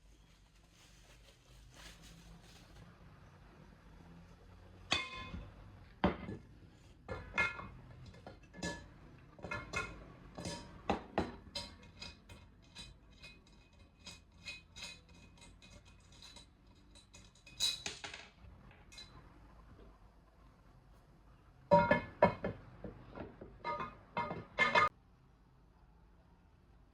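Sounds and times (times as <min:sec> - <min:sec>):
metal clinking on cookware lid: 0:04.9 - 0:05.4, 0:07.1 - 0:18.0, 0:21.7 - 0:22.5, 0:23.6 - 0:24.9.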